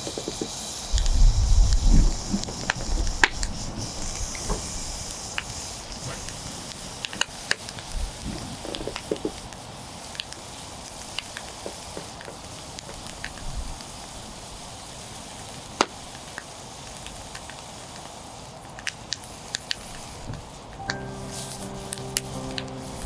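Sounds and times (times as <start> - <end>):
meat sizzling over fire: 0.0 - 23.0
music: 20.8 - 23.0.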